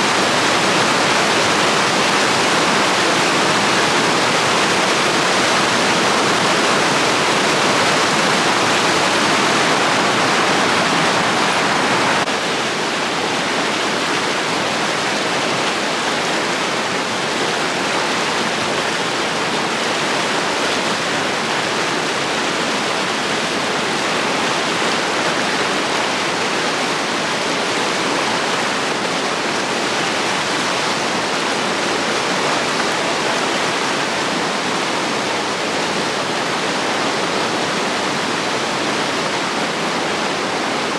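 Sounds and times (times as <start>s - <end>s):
river rushing over rocks: 0.0s - 40.9s.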